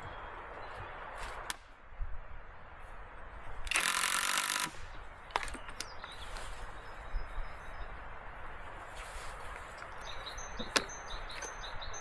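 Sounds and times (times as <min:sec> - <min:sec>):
sharp clicks: 0:03.6 - 0:06.0
power tool running: 0:03.7 - 0:04.8.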